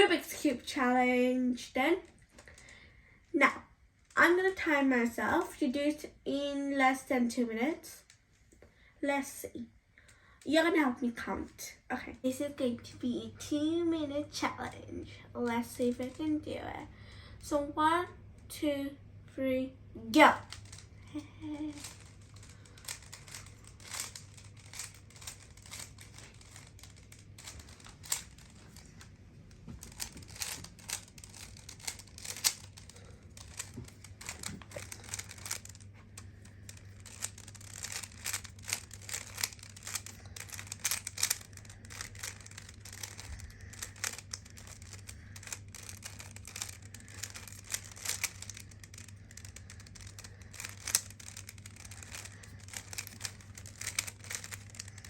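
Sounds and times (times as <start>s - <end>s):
low hum: 20.4s - 55.0s
puzzle cube plastic clicks: 20.4s - 55.0s.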